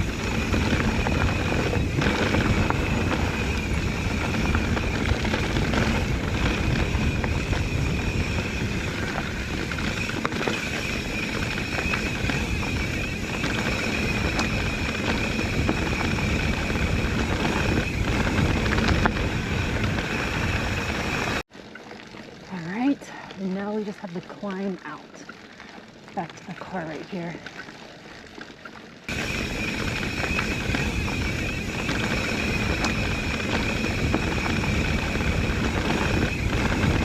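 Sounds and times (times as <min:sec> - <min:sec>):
high-pitched hum: 0:00.0 - 0:21.4, 0:29.1 - 0:37.0
bike tyres rumbling on dirt: 0:00.0 - 0:37.0.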